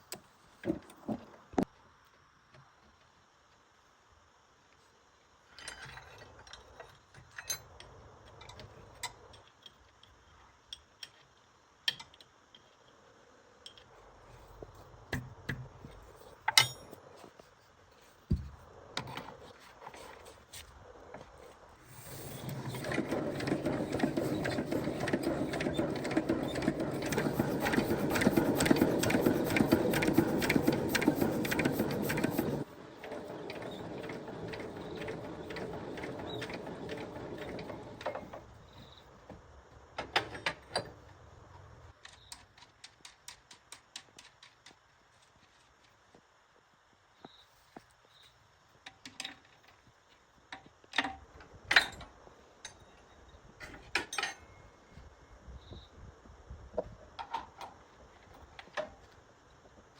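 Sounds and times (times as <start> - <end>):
small motorised tool running: 22.0 - 38.4.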